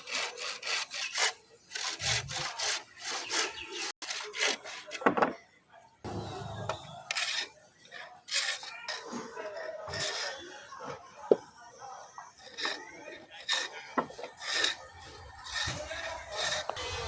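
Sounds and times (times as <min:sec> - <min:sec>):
saw cutting through wood: 0:00.0 - 0:05.1, 0:07.1 - 0:10.8, 0:12.4 - 0:17.0.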